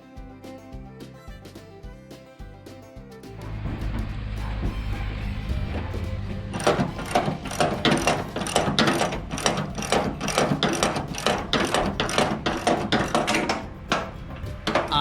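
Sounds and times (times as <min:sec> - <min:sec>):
ratchet clicking: 0:05.7 - 0:15.0.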